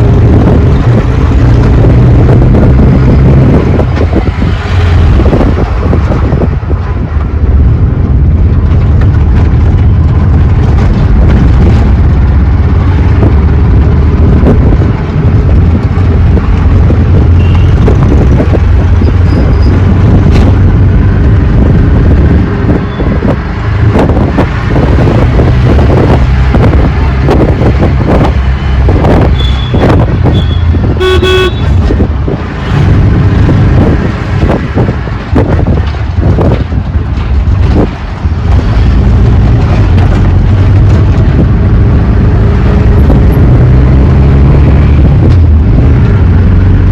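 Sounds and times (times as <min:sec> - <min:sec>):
auto rickshaw engine running: 0:00.0 - 0:46.9
road and wind noise: 0:00.0 - 0:46.9
vehicle horn toot: 0:17.4 - 0:17.7, 0:29.4 - 0:31.8.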